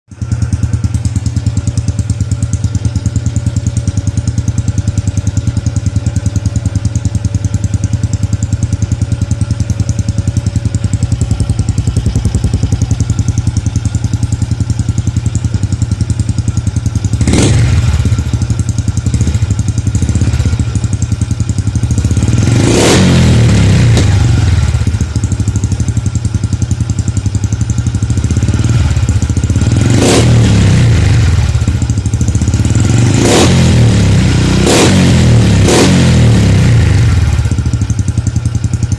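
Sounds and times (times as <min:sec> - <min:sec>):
motorcycle engine idling: 0:00.1 - 0:38.9
engine revving: 0:17.1 - 0:25.7, 0:28.1 - 0:37.8.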